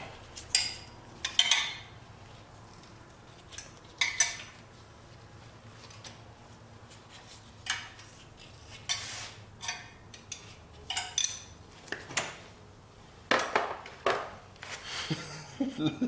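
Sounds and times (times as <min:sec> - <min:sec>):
metal tools clinking and clanking: 0:00.5 - 0:01.9, 0:03.6 - 0:04.6, 0:08.9 - 0:12.4.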